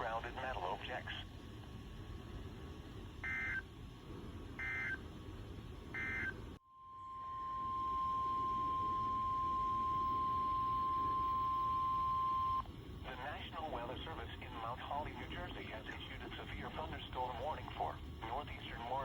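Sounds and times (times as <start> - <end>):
steady single-pitch alert tone: 6.0 - 12.6.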